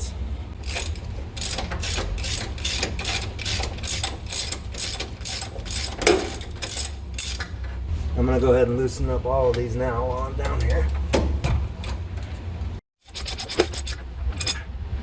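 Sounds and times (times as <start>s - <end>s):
ratchet wrench clicking: 0.6s - 7.6s.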